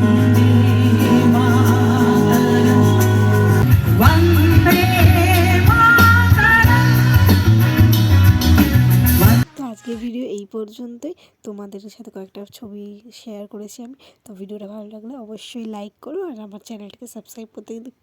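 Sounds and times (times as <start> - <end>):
person singing: 0.0 - 8.1, 9.1 - 10.1
steady bass: 0.0 - 9.5
guitar: 0.0 - 10.0.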